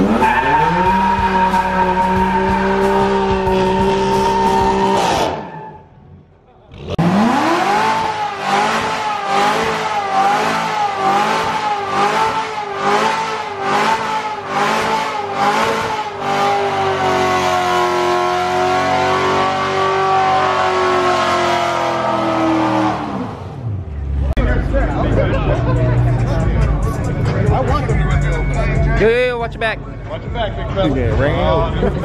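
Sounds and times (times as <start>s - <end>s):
car engine revving high: 0.0s - 5.7s, 6.7s - 24.4s.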